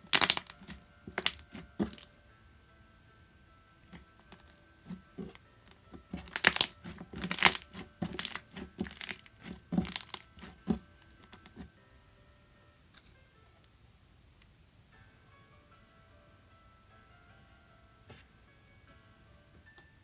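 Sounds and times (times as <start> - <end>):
slime squished by hand: 0.0 - 2.1, 4.3 - 11.7.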